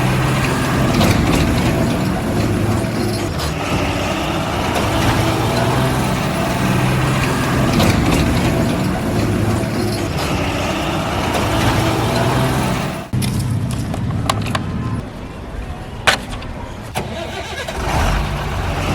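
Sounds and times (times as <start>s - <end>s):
mechanical clatter: 0.0s - 15.0s
heavy vehicle engine running: 0.0s - 18.9s.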